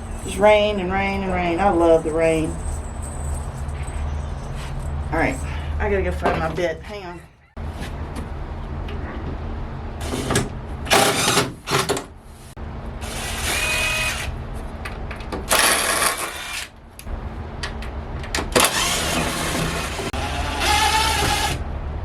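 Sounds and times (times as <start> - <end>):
steady low hum: 0.0 - 11.0
power drill backing out screws: 10.9 - 12.0, 15.5 - 16.7, 18.6 - 21.6.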